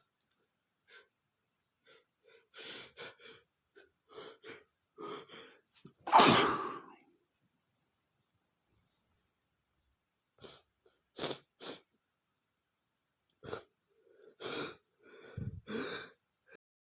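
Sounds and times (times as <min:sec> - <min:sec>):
man sneezing loudly: 0:06.1 - 0:06.9.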